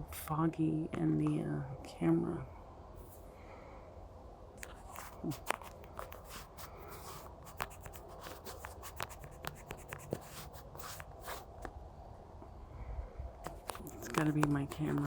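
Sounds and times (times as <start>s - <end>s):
fingers tapping a phone: 5.0s - 11.5s, 13.4s - 15.0s.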